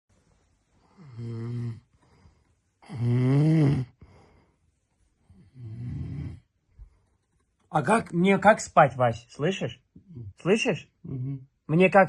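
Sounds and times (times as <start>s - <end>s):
man snoring: 1.0s - 1.9s, 2.8s - 4.0s, 5.4s - 6.5s.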